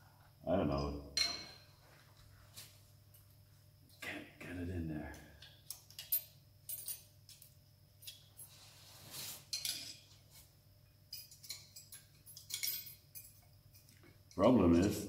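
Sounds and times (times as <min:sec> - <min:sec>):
faint metal clinks and knocks: 0:05.0 - 0:08.7, 0:09.4 - 0:15.0
brief scrape: 0:08.5 - 0:09.5.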